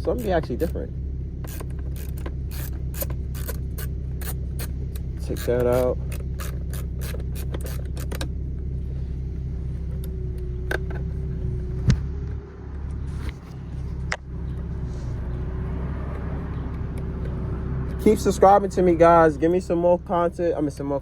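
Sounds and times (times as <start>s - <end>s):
low hum from car: 0.0s - 21.0s
ratchet clicking: 1.4s - 8.3s.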